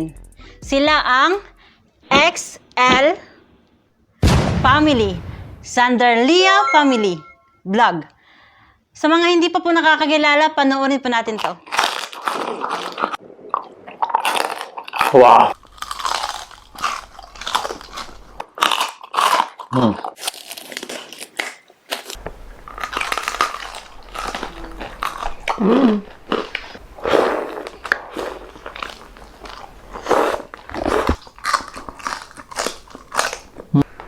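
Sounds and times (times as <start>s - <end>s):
crunching crisp food: 11.6s - 13.2s, 14.0s - 33.9s.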